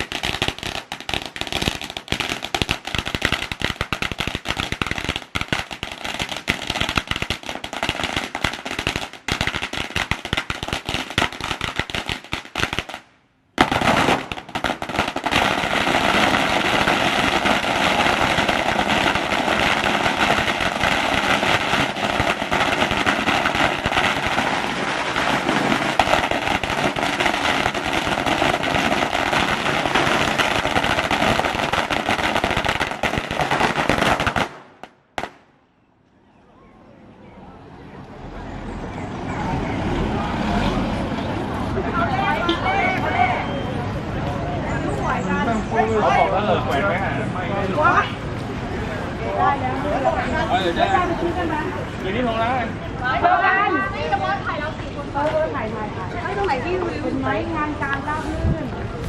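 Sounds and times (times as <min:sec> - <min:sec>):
firecrackers popping: 0:00.0 - 0:35.6.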